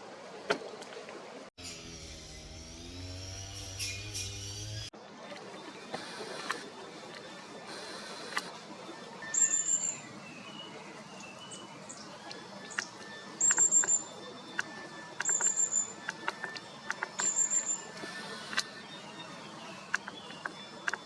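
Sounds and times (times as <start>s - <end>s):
sharp clicks: 14.6s - 18.7s.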